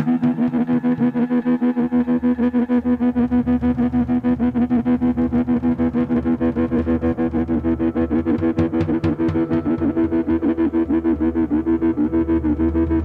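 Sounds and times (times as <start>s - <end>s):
sharp percussive hits: 8.3s - 10.2s.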